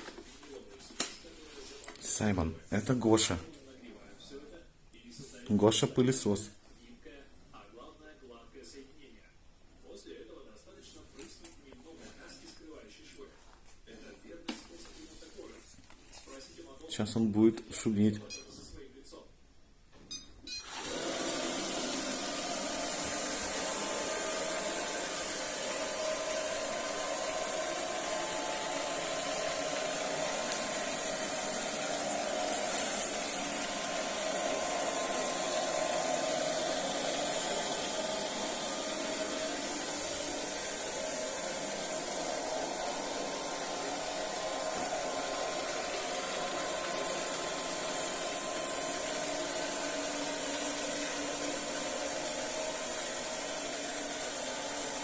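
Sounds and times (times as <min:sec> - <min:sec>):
vacuum cleaner running: 0:20.6 - 0:55.0.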